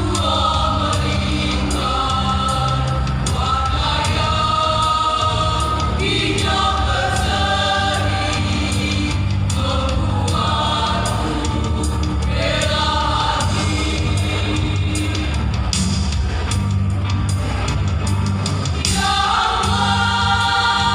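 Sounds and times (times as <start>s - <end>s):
choir singing: 0.0s - 15.7s, 18.8s - 20.9s
instrumental accompaniment with bass: 0.0s - 20.9s.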